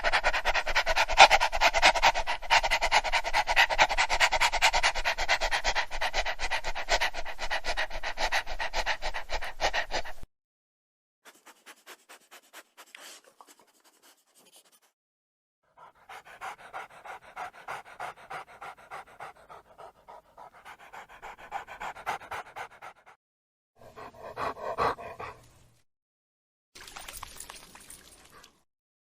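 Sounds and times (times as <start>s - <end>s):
dog panting: 0.0s - 10.3s, 15.7s - 23.2s, 23.8s - 25.6s.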